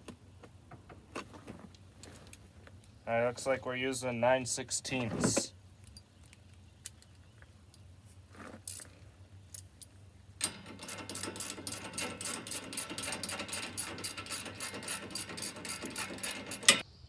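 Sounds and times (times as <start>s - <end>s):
socket wrench ratcheting: 10.4s - 16.8s.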